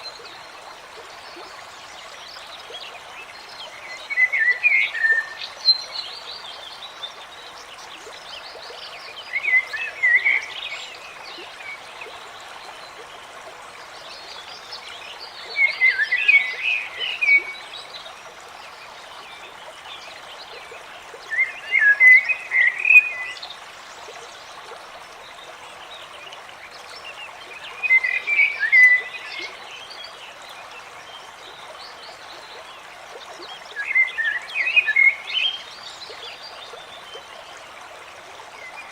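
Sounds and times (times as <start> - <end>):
stream running: 0.0 - 38.9.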